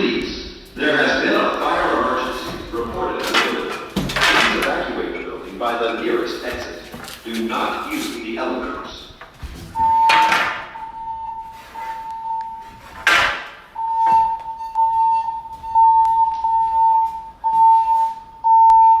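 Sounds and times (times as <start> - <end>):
fire alarm alert tone: 9.8 - 19.0.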